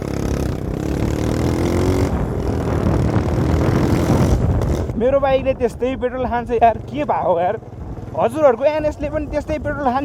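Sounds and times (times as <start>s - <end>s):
motorcycle engine accelerating: 0.0s - 9.8s
wind rushing: 0.1s - 6.9s.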